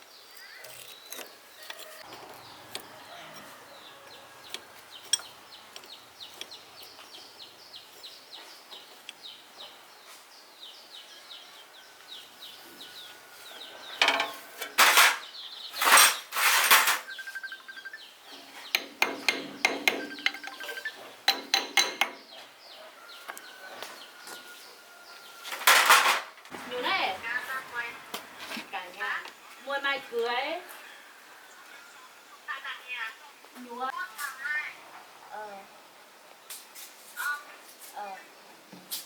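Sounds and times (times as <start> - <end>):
metal tools clattering: 14.0 - 17.2, 18.8 - 22.4, 25.5 - 26.3.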